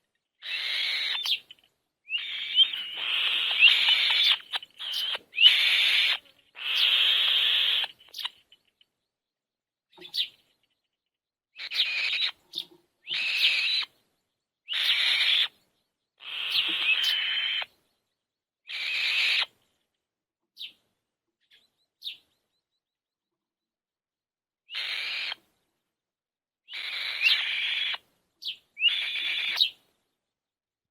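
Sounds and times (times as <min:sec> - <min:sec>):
young birds hissing begging calls: 0:02.2 - 0:07.9.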